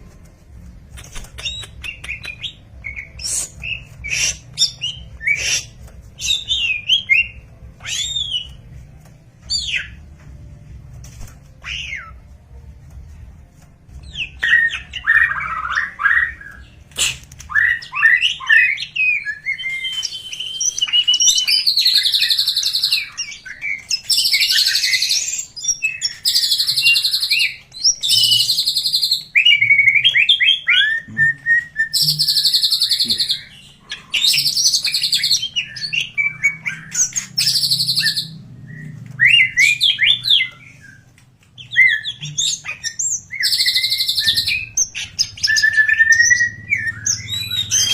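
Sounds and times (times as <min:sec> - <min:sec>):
bird singing chirps and trills: 0:01.4 - 0:08.7, 0:17.5 - 0:47.9.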